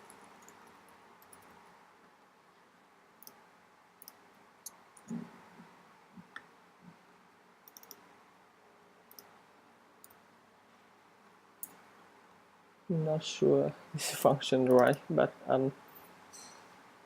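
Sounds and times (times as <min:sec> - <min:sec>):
computer keyboard and mouse clicking: 0:00.0 - 0:01.6, 0:07.6 - 0:08.0, 0:09.1 - 0:09.3.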